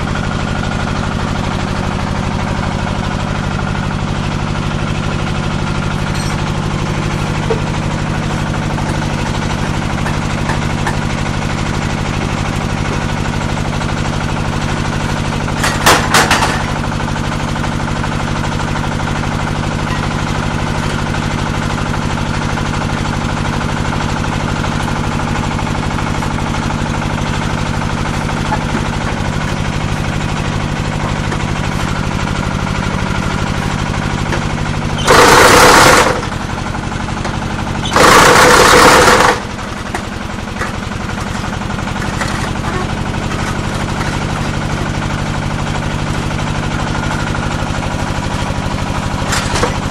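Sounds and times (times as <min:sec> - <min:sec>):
diesel engine running: 0:00.0 - 0:49.9
loud machine knocks: 0:15.6 - 0:16.8.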